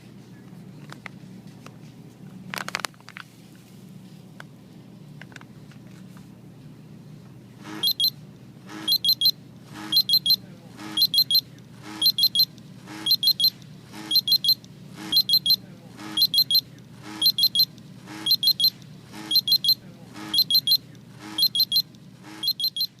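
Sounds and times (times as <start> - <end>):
gas monitor alarm beeping: 7.6 - 23.0.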